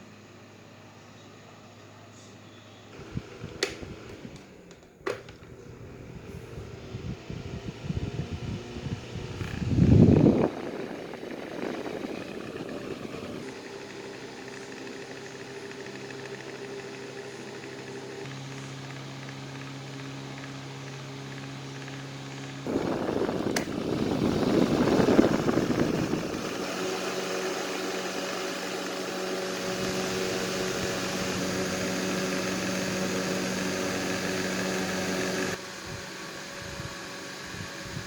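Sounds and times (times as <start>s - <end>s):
electric fan humming: 0.0s - 38.0s
fan switch click: 3.5s - 5.6s, 22.8s - 25.3s.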